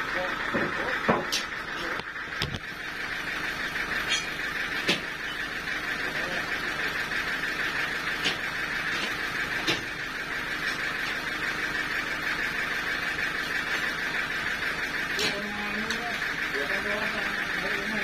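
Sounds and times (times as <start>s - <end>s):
sawmill whirring: 0.0s - 18.0s.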